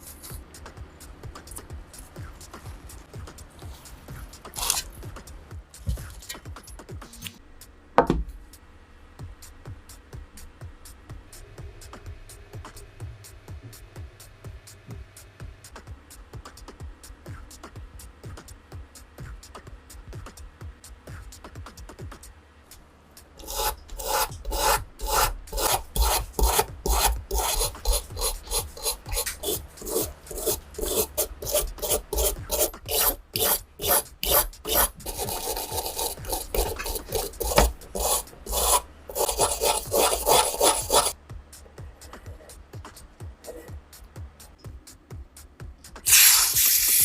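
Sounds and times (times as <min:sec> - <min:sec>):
abrasive rasping on metal: 0:23.4 - 0:41.1.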